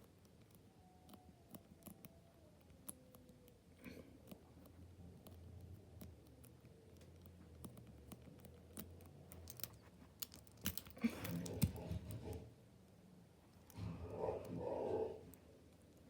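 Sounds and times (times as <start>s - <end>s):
padlock dials clicking: 4.2s - 11.0s.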